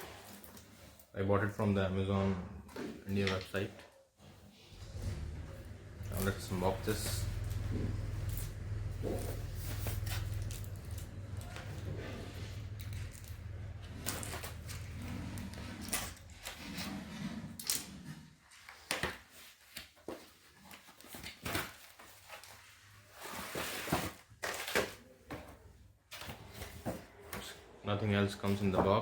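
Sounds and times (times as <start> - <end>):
packaging scrapes and rustles: 0.0 - 1.1, 6.0 - 25.4.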